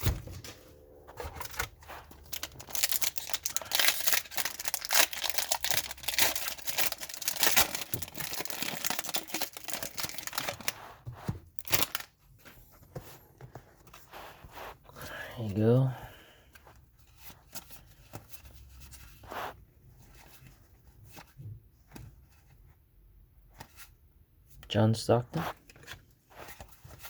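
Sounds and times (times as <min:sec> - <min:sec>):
wrapper being torn and crinkled: 0:01.6 - 0:10.8, 0:11.6 - 0:12.1.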